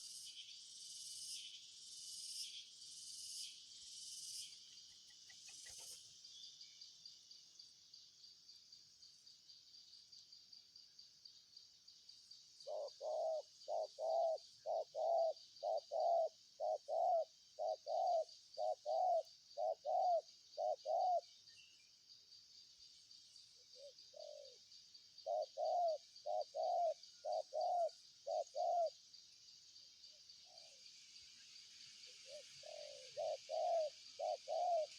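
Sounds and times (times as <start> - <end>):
high insect trill: 0.0 - 34.9
pulsing insect chorus: 0.0 - 34.9
dove cooing: 12.6 - 21.2, 23.8 - 24.6, 25.2 - 29.0, 32.2 - 34.9.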